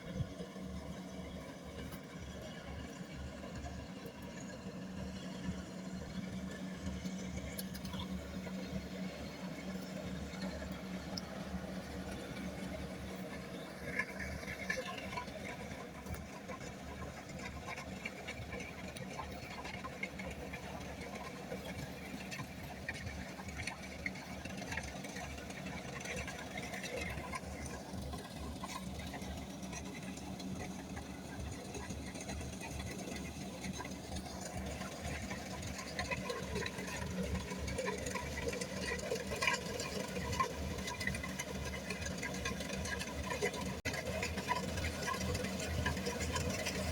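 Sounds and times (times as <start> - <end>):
combine harvester engine chatter: 0.0 - 46.9.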